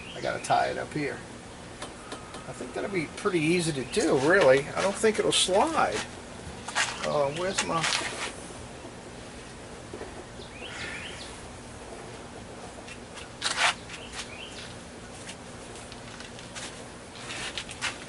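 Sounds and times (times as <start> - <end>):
bird chirp: 0.0 - 0.7, 6.7 - 7.8, 10.3 - 11.4, 13.8 - 14.8.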